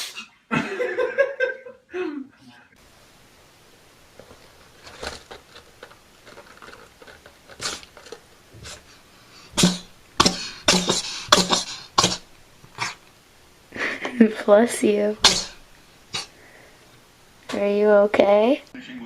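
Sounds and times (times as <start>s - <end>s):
cat sneezing: 7.6s - 7.9s, 8.6s - 13.0s, 15.2s - 16.3s.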